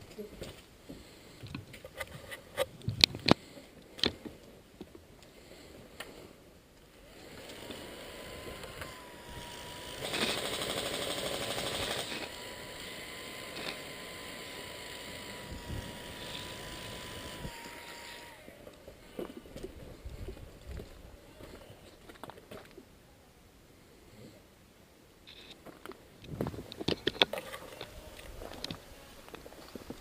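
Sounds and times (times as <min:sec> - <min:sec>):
faint steady hum: 0:00.0 - 0:30.0
airsoft gun full-auto burst: 0:09.4 - 0:18.3.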